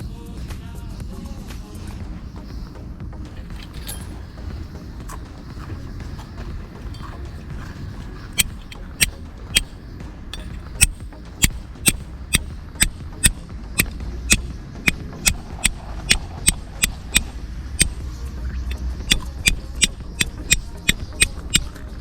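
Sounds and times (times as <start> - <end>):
striker hitting flint: 3.4 - 18.0, 18.6 - 21.8.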